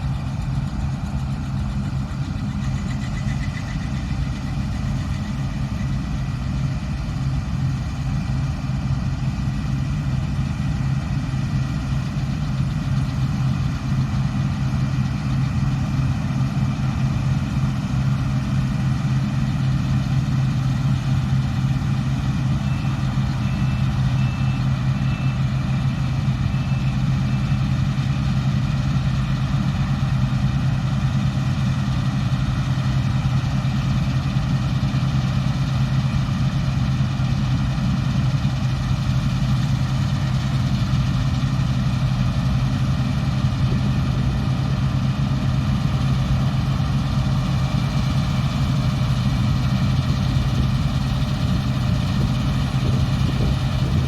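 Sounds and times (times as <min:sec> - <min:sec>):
diesel engine humming: 0:00.0 - 0:54.0
faint high beeps: 0:22.6 - 0:25.4.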